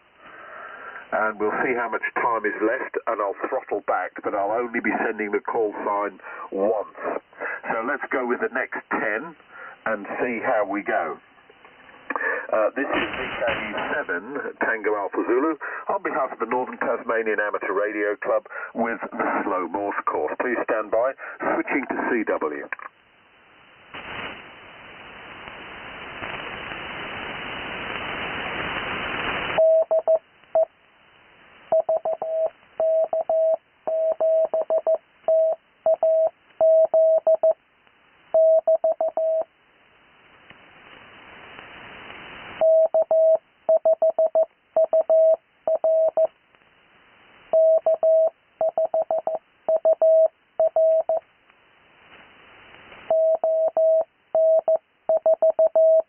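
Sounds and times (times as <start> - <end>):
radio hiss: 0.0 - 56.0
morse code tone: 29.6 - 30.7, 31.8 - 37.6, 38.4 - 39.5, 42.6 - 46.3, 47.6 - 51.2, 53.1 - 56.0.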